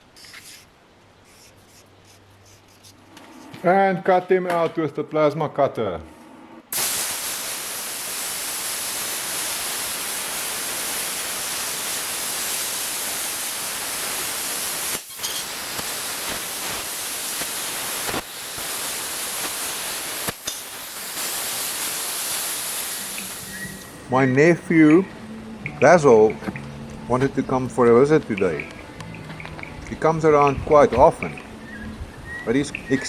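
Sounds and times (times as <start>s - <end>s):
plasma cutter hissing: 6.7s - 24.1s.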